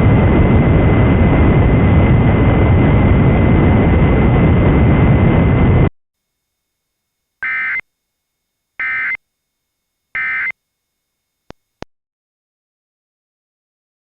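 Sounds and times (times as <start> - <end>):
loud static hiss: 6.2 - 11.8
short data tone bursts: 7.4 - 7.9, 8.8 - 9.3, 10.1 - 10.6.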